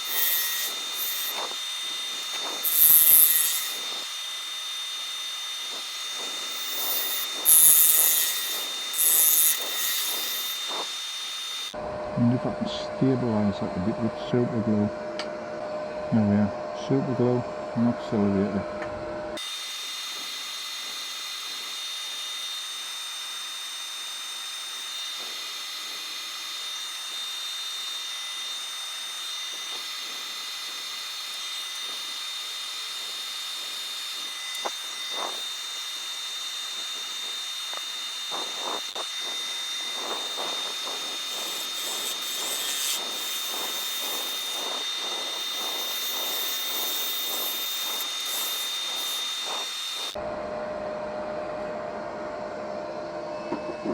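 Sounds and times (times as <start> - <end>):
turning tool scraping wood: 0.0 - 11.8, 23.9 - 50.2
wood lathe whining: 0.0 - 12.0, 19.4 - 50.2.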